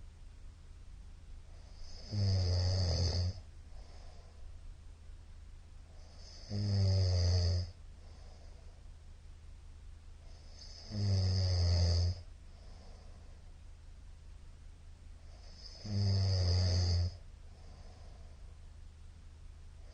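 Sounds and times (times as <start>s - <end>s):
faint breathing: 1.4s - 4.8s, 7.6s - 9.1s, 12.4s - 13.7s, 17.0s - 18.7s
man snoring loudly: 1.7s - 3.4s, 6.1s - 7.8s, 10.5s - 12.2s, 15.4s - 17.2s.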